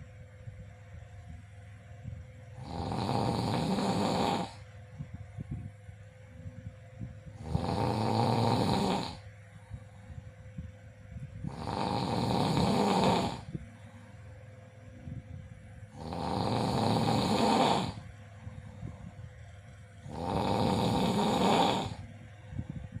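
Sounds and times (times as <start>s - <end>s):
person snoring: 2.6s - 4.6s, 7.4s - 9.2s, 11.5s - 13.6s, 15.9s - 18.0s, 20.0s - 22.0s
quiet breathing: 6.6s - 23.0s.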